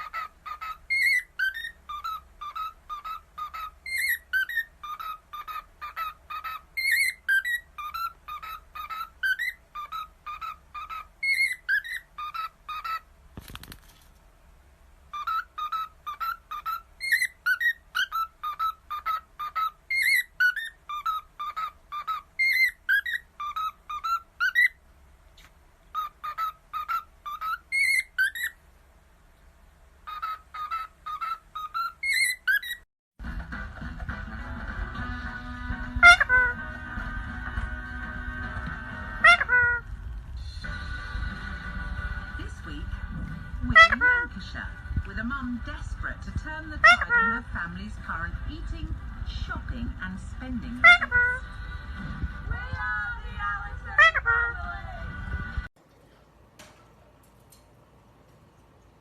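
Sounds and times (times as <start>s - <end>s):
parrot whistling a tune: 0.0s - 13.0s, 15.1s - 24.8s, 25.9s - 28.6s, 30.1s - 32.8s, 36.0s - 36.6s, 39.2s - 39.8s.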